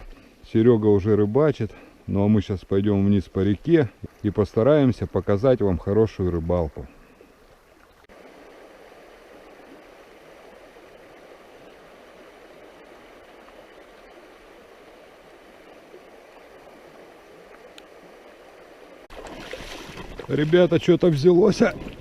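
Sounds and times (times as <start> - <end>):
river water rushing: 8.1 - 22.0.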